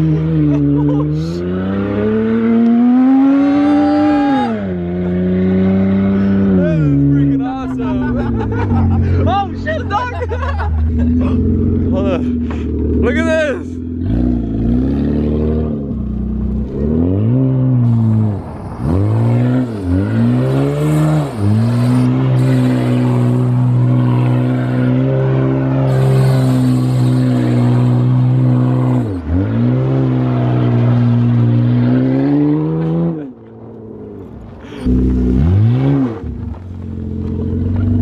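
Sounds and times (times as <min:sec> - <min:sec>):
car engine revving hard: 0:00.0 - 0:07.1, 0:16.7 - 0:33.4, 0:34.8 - 0:36.6.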